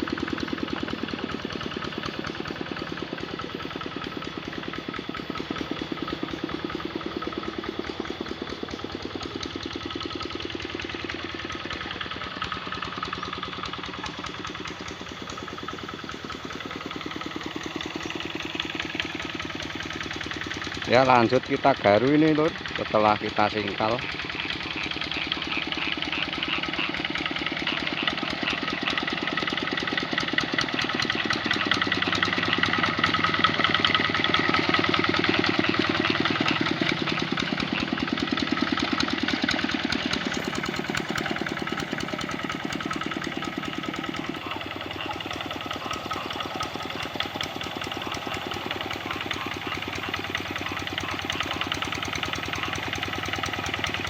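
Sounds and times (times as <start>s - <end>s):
diesel engine running under load: 0.0s - 54.0s.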